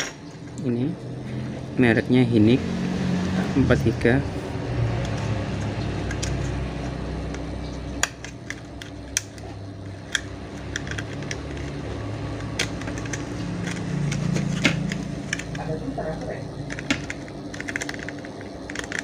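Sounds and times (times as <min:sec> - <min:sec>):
steady low rumble: 0:03.5 - 0:19.0
hands clicking and tapping parts: 0:05.0 - 0:15.6, 0:16.6 - 0:19.0.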